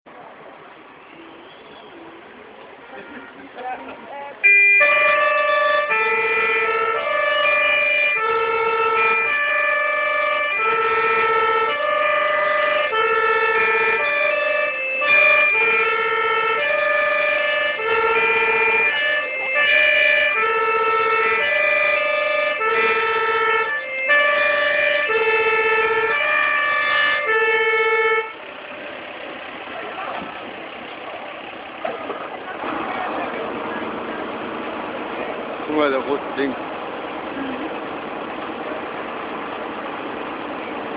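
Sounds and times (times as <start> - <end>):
two-tone emergency siren: 4.4 - 28.5.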